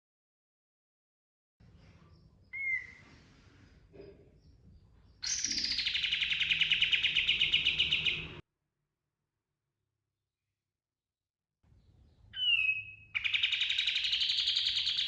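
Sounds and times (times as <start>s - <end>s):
songbird singing rolling trill: 4.4s - 8.4s, 12.0s - 15.0s.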